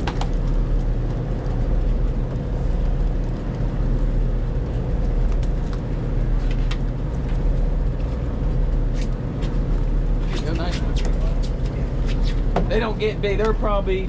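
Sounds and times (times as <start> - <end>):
boat engine droning: 0.0 - 14.0.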